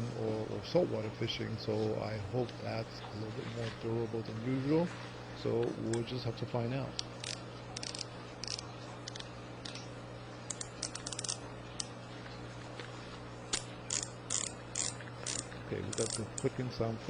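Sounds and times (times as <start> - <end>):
fishing reel knob clicking: 7.0 - 9.8, 10.5 - 11.9, 13.5 - 16.6.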